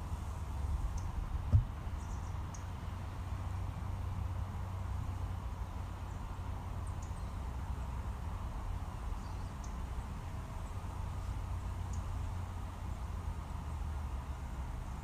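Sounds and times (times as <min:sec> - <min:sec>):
low outdoor rumble: 0:00.0 - 0:15.0
faint bird chirps: 0:06.8 - 0:07.5, 0:09.0 - 0:09.8.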